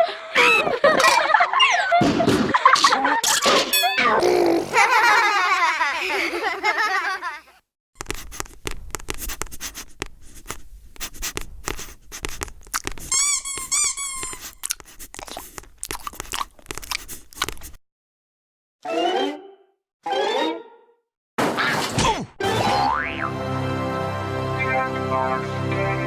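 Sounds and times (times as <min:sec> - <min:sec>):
cartoon crunching and clicking: 0:08.0 - 0:17.8
squeaky chirps: 0:13.1 - 0:14.7.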